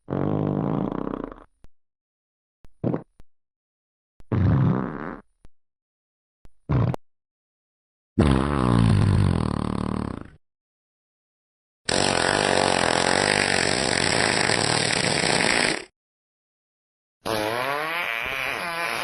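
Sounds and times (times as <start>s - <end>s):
fart sound effects: 0.0s - 1.5s, 4.3s - 5.3s, 6.6s - 7.0s, 8.2s - 10.4s, 11.9s - 15.9s, 17.2s - 19.0s.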